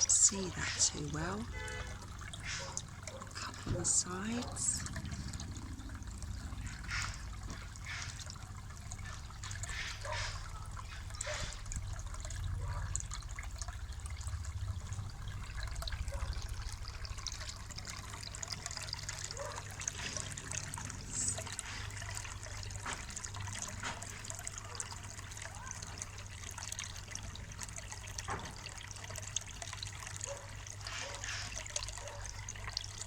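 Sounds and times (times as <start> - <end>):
small water splashes: 0.0 - 33.0
water trickling: 0.0 - 33.0.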